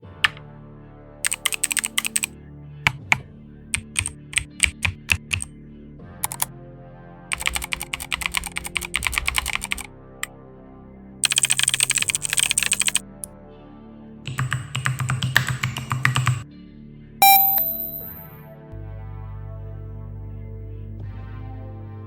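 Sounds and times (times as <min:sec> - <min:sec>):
background music: 0:00.0 - 0:16.4
mechanical keyboard typing: 0:01.3 - 0:02.3, 0:03.8 - 0:05.5, 0:06.2 - 0:06.5, 0:07.3 - 0:09.9, 0:11.2 - 0:13.0, 0:14.3 - 0:16.4, 0:17.2 - 0:18.2.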